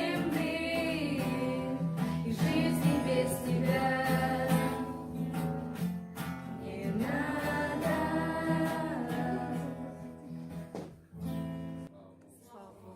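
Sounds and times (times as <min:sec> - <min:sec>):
acoustic guitar: 0:00.0 - 0:12.9
person singing: 0:06.6 - 0:10.5.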